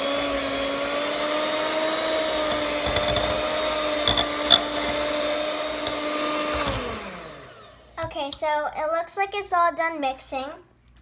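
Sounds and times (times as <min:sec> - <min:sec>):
electric hand mixer running: 0:00.0 - 0:08.0.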